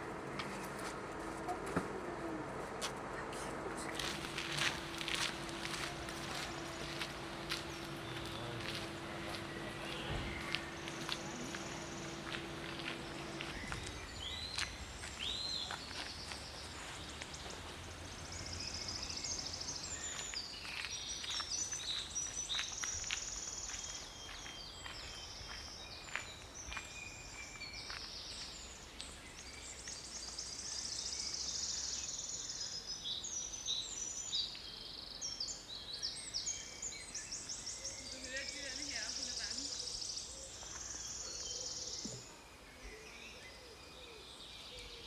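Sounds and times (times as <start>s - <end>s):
faint low rumble: 0.0s - 21.8s
songbirds singing and chirping: 0.0s - 45.0s.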